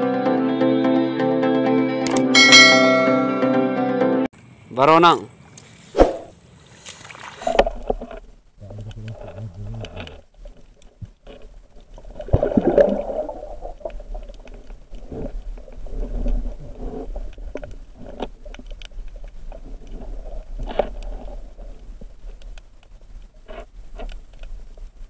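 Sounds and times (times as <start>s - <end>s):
low underwater hum: 5.4s - 25.0s.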